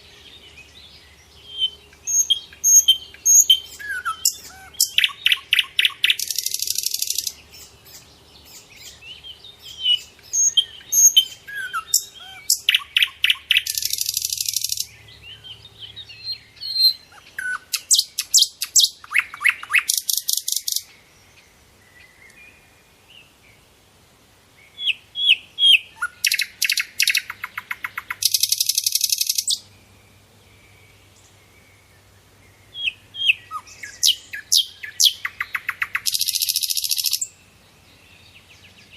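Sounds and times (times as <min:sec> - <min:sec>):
pet birds chirping: 0:00.0 - 0:20.9, 0:24.8 - 0:29.6, 0:32.7 - 0:37.4.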